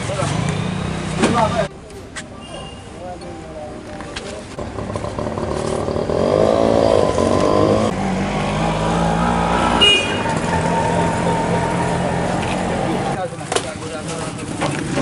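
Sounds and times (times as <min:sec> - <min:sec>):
engine revving and running: 0:04.6 - 0:13.2.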